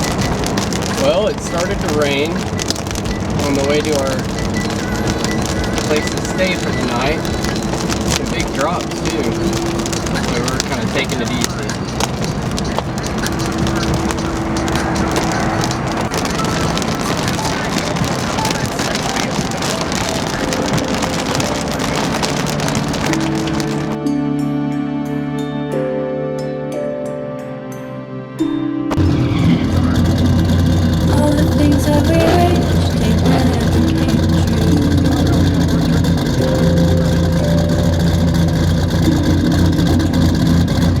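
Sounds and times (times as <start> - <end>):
pitch-shifting steady tones: 0.0 - 24.0, 28.9 - 41.0
rain on a car: 0.0 - 24.0, 28.9 - 41.0
road noise: 0.0 - 24.0, 28.9 - 41.0
low hum: 28.9 - 41.0.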